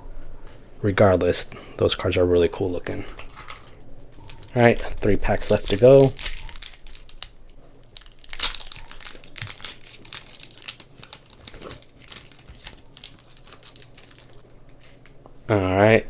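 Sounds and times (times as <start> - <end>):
foil wrapper crinkling and tearing: 2.9 - 15.2.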